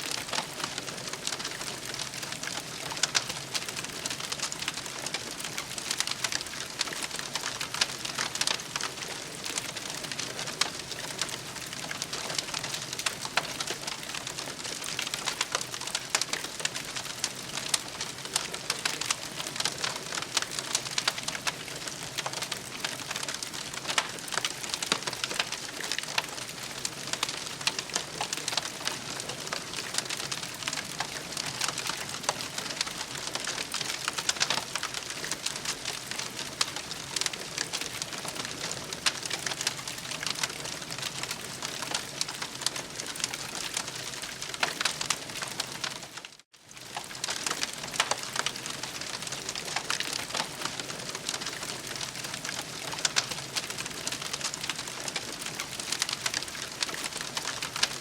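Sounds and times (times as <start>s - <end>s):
campfire crackling: 0.0s - 58.0s.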